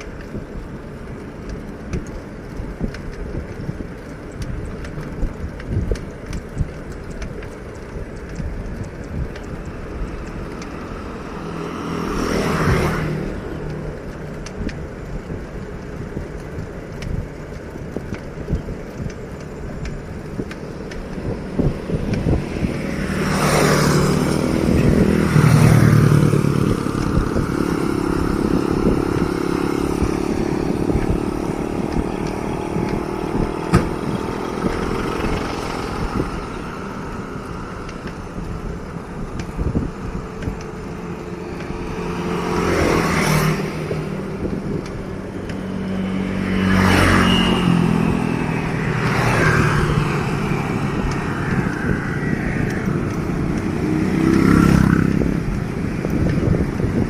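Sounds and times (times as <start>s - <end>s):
engine hum: 0.0s - 57.0s
road and wind rumble: 0.0s - 57.0s
vehicles passing close by: 0.0s - 57.0s.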